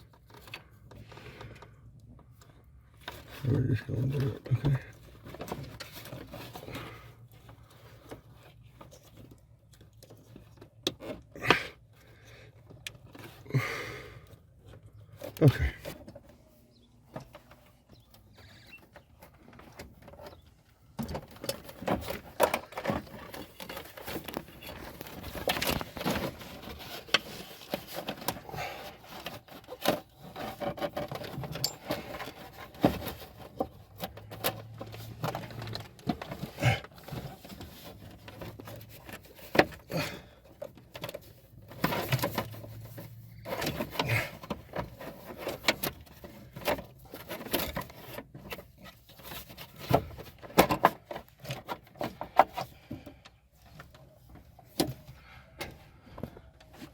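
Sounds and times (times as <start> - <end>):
hands clicking and tapping wiring: 14.2 - 56.9.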